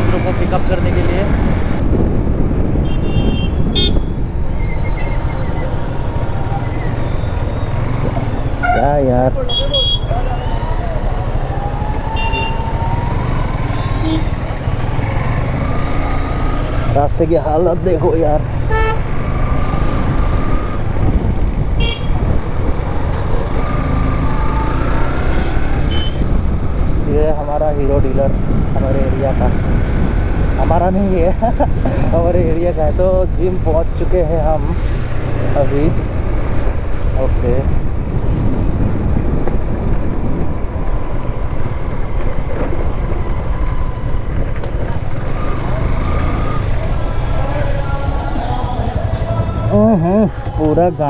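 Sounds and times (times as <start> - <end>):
motorcycle engine: 0.0 - 27.2, 34.8 - 51.0
road noise: 0.0 - 51.0
wind buffeting: 0.0 - 51.0
vehicle horn toot: 2.8 - 4.2, 8.6 - 10.2, 12.2 - 12.6, 13.8 - 14.4, 18.7 - 19.1, 21.8 - 22.2, 25.9 - 26.3
steady horn-like tones: 18.6 - 19.6.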